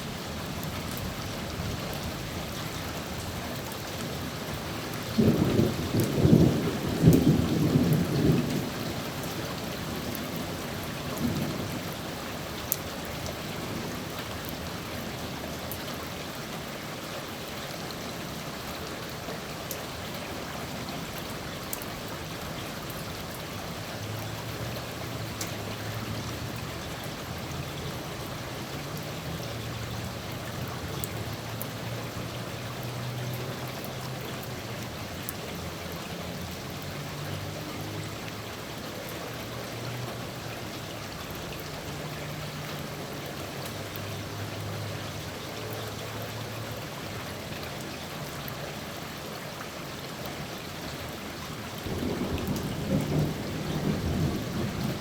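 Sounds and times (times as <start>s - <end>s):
steady rain falling: 0.0s - 55.0s
distant thunder rumble: 5.1s - 10.6s, 51.8s - 55.0s.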